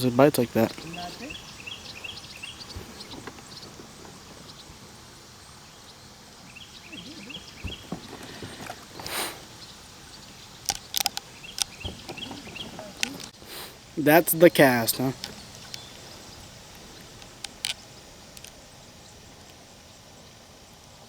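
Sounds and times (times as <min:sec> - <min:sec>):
river flowing: 0:00.0 - 0:20.6
small high chirps: 0:05.6 - 0:19.1
sharp clicks and knocks: 0:10.2 - 0:13.4.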